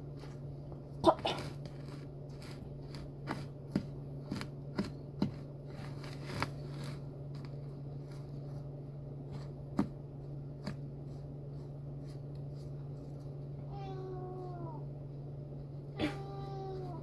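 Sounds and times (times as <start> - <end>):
steady low hum: 0.0 - 17.0
cat meowing: 13.7 - 14.8, 16.0 - 17.0.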